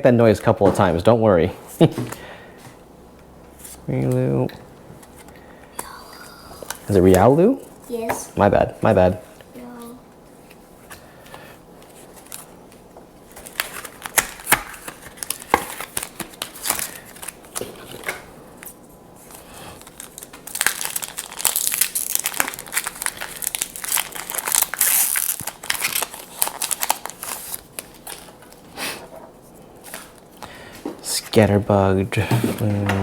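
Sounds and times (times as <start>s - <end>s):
foil wrapper crinkling and tearing: 13.2s - 28.6s.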